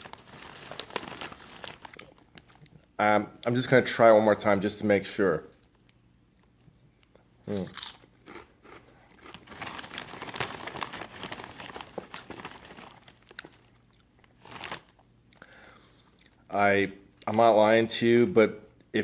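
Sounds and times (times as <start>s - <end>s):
potato chips crunching: 0.0s - 2.8s, 7.5s - 15.0s.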